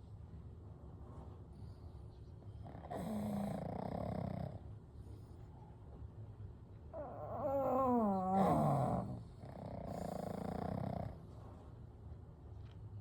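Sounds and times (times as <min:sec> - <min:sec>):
dogs snoring: 0:02.6 - 0:04.7, 0:06.9 - 0:11.3.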